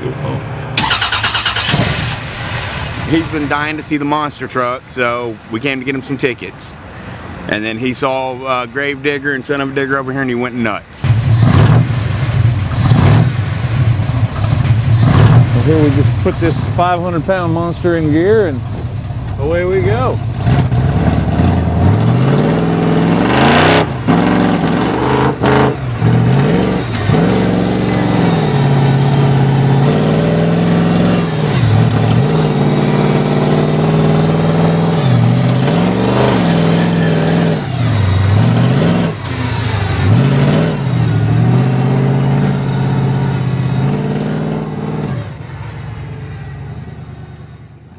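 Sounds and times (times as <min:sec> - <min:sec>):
small vehicle engine revving: 0:00.2 - 0:03.6, 0:20.2 - 0:45.7.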